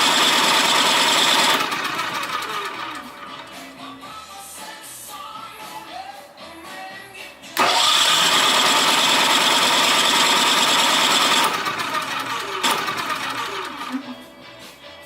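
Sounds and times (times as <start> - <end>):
generator engine cranking: 0.0 - 3.8, 7.6 - 14.3.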